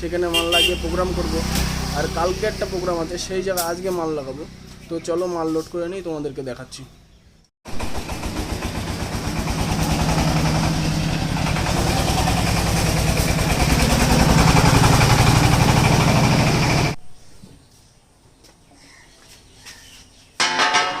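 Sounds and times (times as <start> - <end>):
engine running: 7.7 - 17.0.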